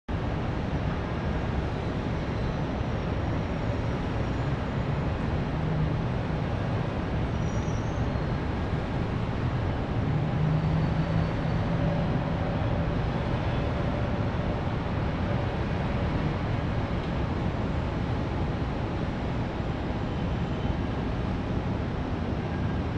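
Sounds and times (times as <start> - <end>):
passing vehicle engine hum: 8.2 - 18.1.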